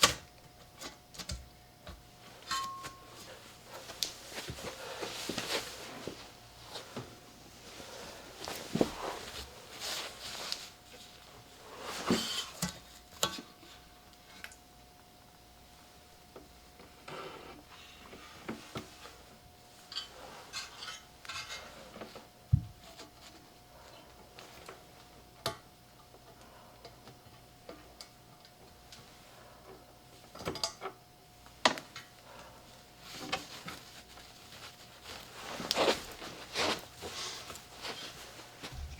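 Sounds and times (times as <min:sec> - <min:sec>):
faint steady hum: 0:00.0 - 0:38.9
faint steady tone: 0:01.8 - 0:03.8
rustling: 0:02.3 - 0:12.4, 0:32.3 - 0:38.9.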